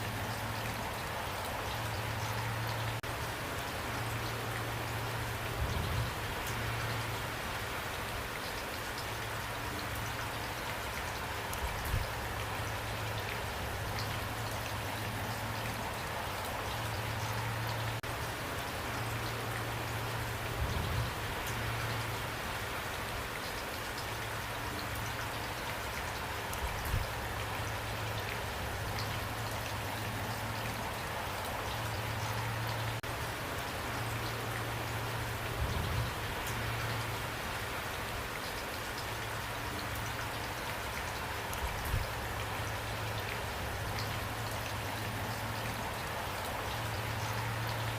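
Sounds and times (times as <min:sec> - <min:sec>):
rain pattering: 0:00.0 - 0:47.9.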